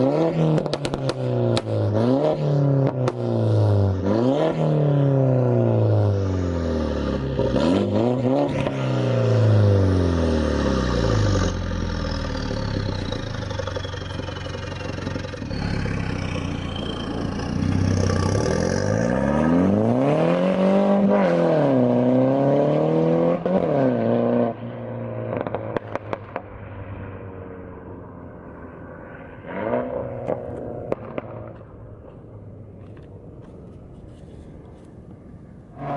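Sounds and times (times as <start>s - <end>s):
car engine revving: 0.0s - 31.7s
exhaust pops and crackles: 0.5s - 1.8s, 12.4s - 16.8s, 25.4s - 26.5s, 30.2s - 32.2s.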